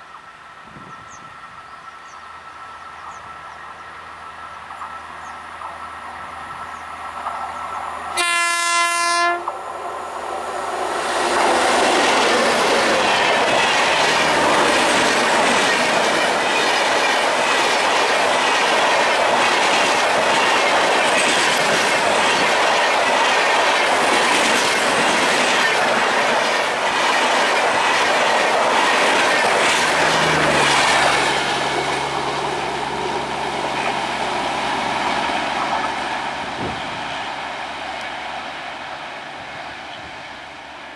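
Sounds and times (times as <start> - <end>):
low train hum: 0.0 - 40.9
train horn blast: 8.1 - 9.6
train wheels clattering: 10.9 - 38.4.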